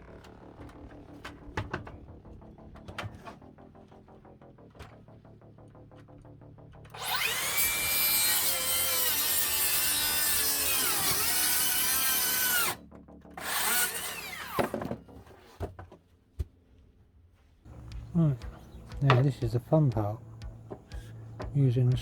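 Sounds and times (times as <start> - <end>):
circular saw cutting chipboard: 7.0 - 12.8, 13.4 - 14.9.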